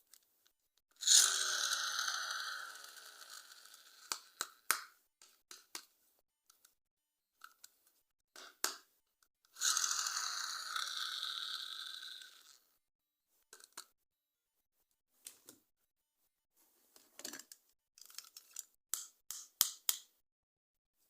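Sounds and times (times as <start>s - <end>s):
plastic crinkles and clicks: 17.2s - 19.1s.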